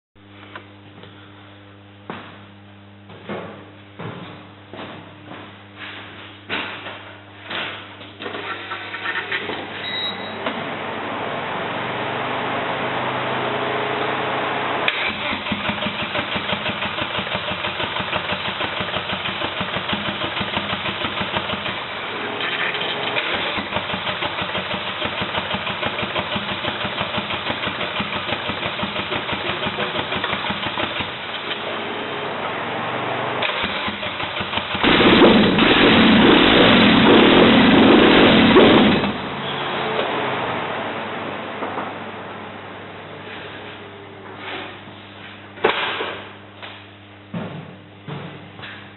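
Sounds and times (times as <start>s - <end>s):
engine starter cranking: 8.4s - 9.5s, 14.9s - 21.9s, 22.5s - 31.6s, 33.4s - 39.2s
car engine running: 10.6s - 42.8s.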